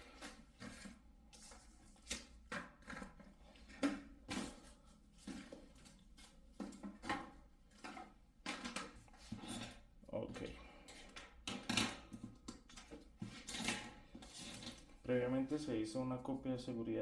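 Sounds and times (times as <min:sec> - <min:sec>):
hard objects clicking and knocking: 0:05.3 - 0:15.1.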